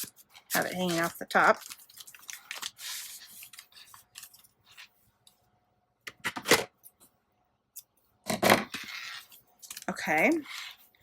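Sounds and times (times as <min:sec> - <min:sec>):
paper rustling: 0:00.0 - 0:05.0.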